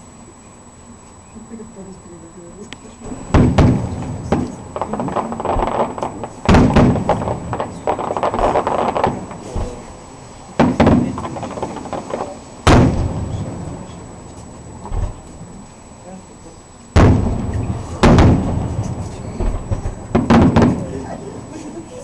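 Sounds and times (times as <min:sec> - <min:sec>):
fireworks bursting with loud bangs: 0:03.0 - 0:15.6, 0:16.9 - 0:22.0
rumbling echo and crackle: 0:03.1 - 0:15.8.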